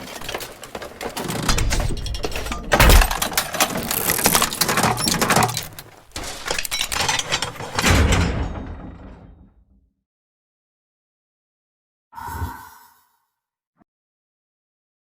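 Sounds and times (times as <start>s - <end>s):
dense crackle of small clicks: 0.0s - 7.6s.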